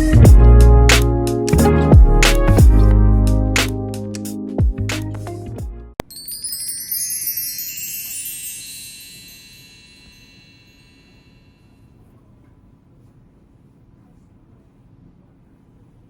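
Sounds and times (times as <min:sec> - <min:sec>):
high chime tones ringing: 0:06.0 - 0:11.8.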